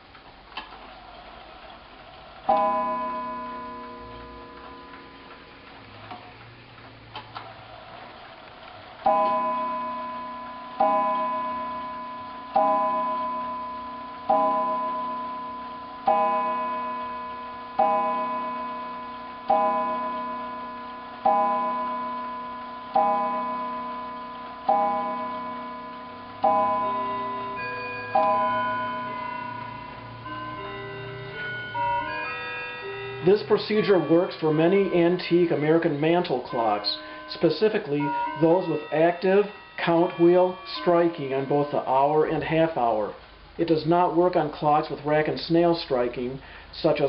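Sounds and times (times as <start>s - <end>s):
clock mechanism click and whir: 0.0s - 41.6s
clock gong strikes ringing: 2.4s - 6.4s, 9.0s - 43.2s
clock ticking: 2.5s - 6.9s, 9.0s - 42.1s.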